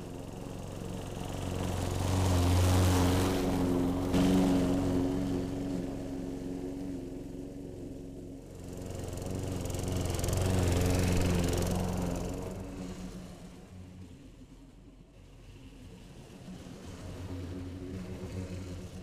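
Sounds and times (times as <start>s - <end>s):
lawn mower running: 0.0s - 13.7s.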